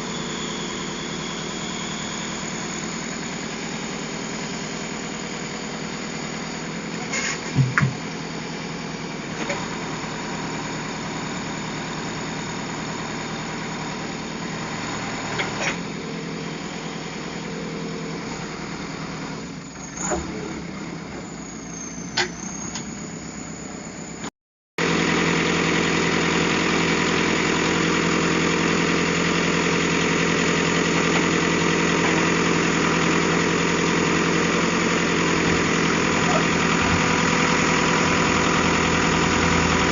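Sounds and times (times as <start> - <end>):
heavy diesel engine running: 0.0 - 39.9
sharp knocks: 7.4 - 8.0.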